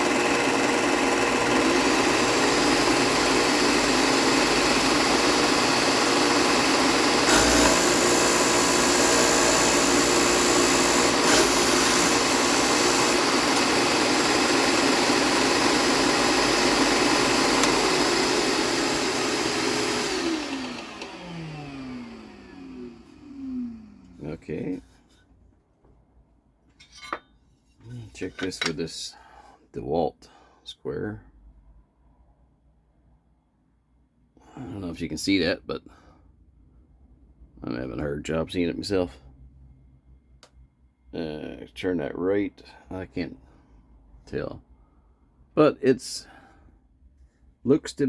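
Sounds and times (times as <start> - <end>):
disc sander running: 0.0 - 24.2
sander motor spinning down: 0.0 - 24.2.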